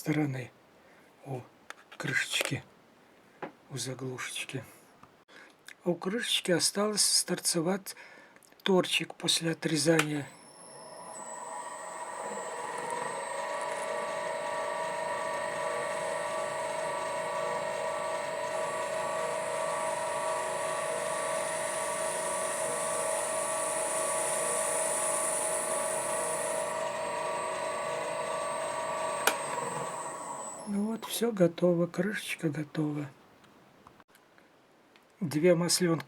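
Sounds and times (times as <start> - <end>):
sharp click: 9.9 - 10.3
cutting hiss: 10.0 - 31.2
metal lathe whine: 10.0 - 31.2.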